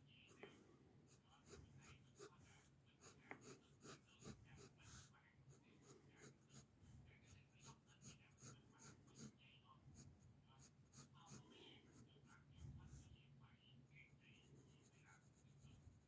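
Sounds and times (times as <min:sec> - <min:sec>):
pencil sketching on paper: 0:00.3 - 0:13.1, 0:14.0 - 0:16.0.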